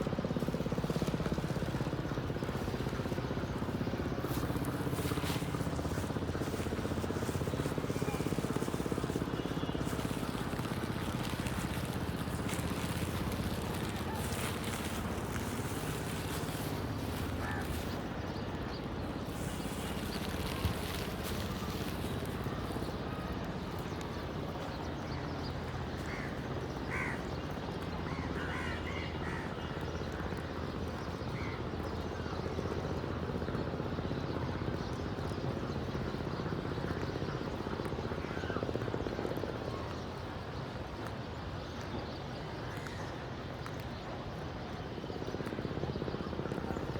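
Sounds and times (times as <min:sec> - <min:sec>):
crow cawing: 0:12.5 - 0:18.0, 0:26.1 - 0:27.2, 0:28.1 - 0:29.6.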